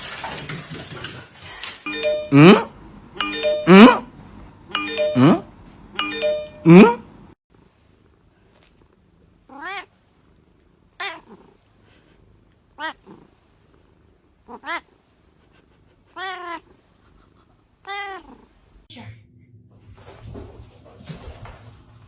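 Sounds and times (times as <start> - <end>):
cat meowing: 9.5 - 9.9, 14.5 - 14.9, 16.1 - 16.8, 17.8 - 18.4.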